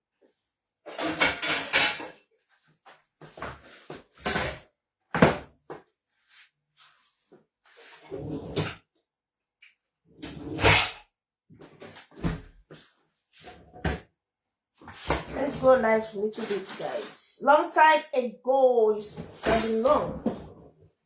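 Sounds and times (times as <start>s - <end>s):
knocks and clatters of cookware: 0.9s - 2.2s.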